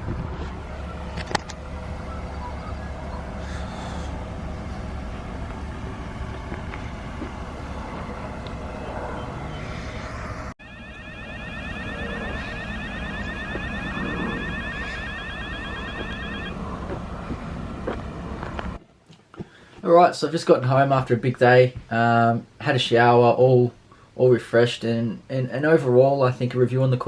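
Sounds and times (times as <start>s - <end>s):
vehicle and outdoor rumble: 0.0s - 27.0s
warbling siren-like tone: 0.3s - 18.3s.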